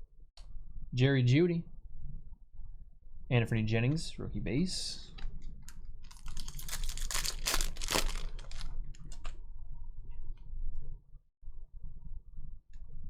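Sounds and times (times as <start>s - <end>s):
trading cards clicking and rustling: 5.2s - 9.3s.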